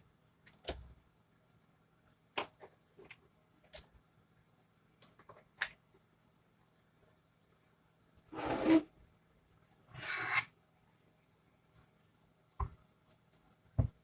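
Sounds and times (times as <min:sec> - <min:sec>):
short scraping noises: 0:10.0 - 0:10.5.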